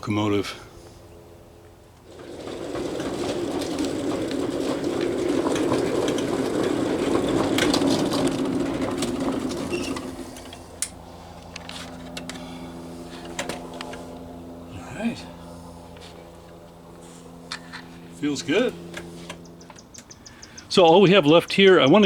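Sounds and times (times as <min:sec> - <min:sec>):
steady motor hum: 0:00.0 - 0:22.0
miniature train wheels rumbling: 0:01.9 - 0:14.1.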